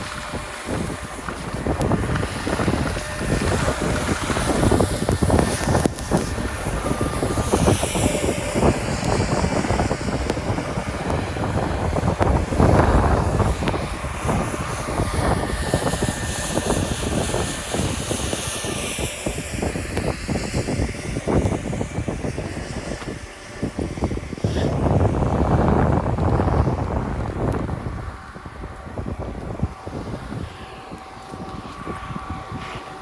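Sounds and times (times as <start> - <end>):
skis scraping on snow: 0.0 - 33.0
wind rushing over microphone: 0.0 - 33.0.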